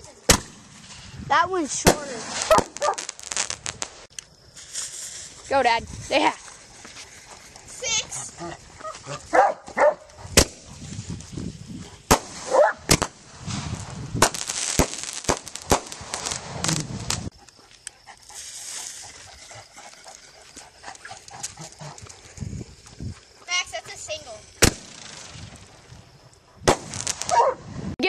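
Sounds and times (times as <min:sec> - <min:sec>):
fireworks bangs and pops: 0:00.0 - 0:08.1, 0:09.2 - 0:17.3, 0:22.6 - 0:28.0
fireworks crackling: 0:00.0 - 0:28.0
dog barking: 0:02.5 - 0:03.1, 0:08.3 - 0:10.1, 0:12.5 - 0:12.9, 0:27.3 - 0:27.6.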